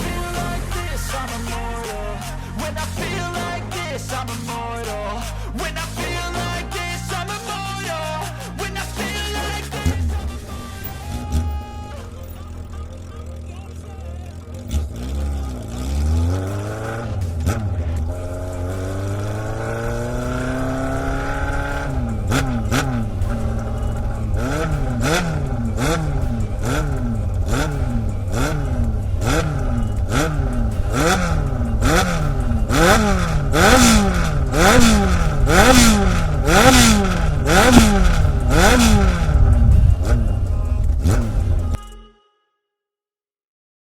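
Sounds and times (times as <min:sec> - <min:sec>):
exhaust crack: 0:00.0 - 0:41.8
motorcycle engine revving: 0:00.0 - 0:41.8.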